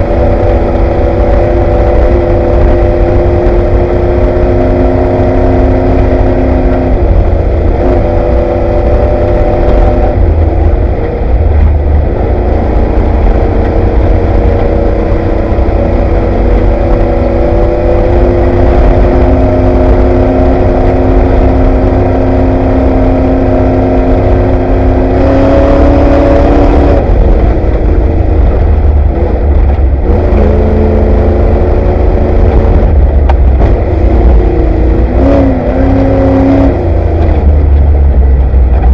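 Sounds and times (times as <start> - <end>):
truck engine running hard: 0.0 - 38.9.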